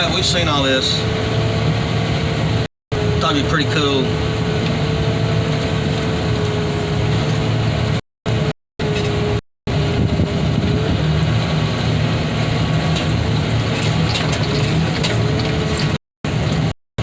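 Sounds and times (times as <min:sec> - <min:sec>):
excavator diesel engine running: 0:00.0 - 0:16.8.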